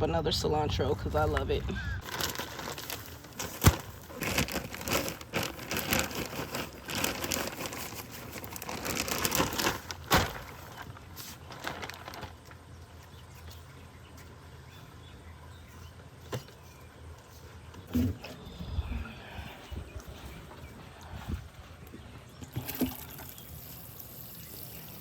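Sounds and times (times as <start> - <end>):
rustling handling noises: 1.0 - 15.0.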